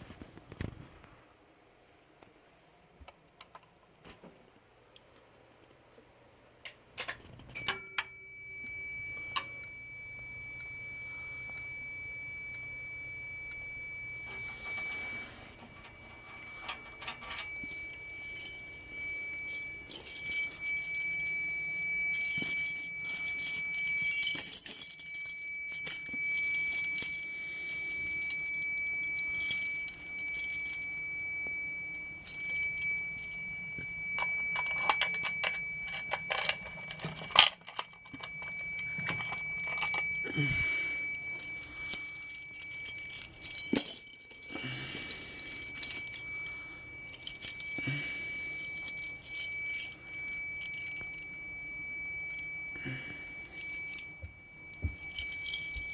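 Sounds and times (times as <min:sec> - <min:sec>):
high-pitched alarm buzzer: 0:07.6 - 0:55.9
handling clicks and metallic rattles: 0:13.5 - 0:51.3, 0:53.5 - 0:55.9.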